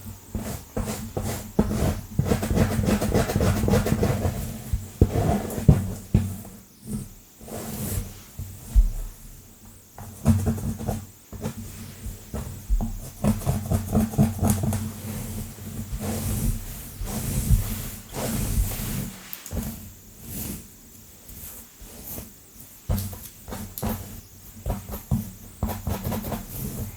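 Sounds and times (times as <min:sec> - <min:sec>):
fingernails scratching through hair: 0:12.4 - 0:20.7, 0:23.0 - 0:26.9.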